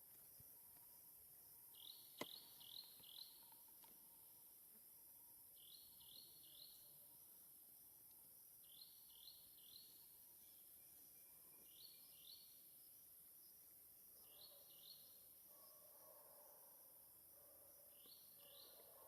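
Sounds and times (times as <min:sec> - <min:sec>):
faint bird chirps: 0:08.6 - 0:19.0.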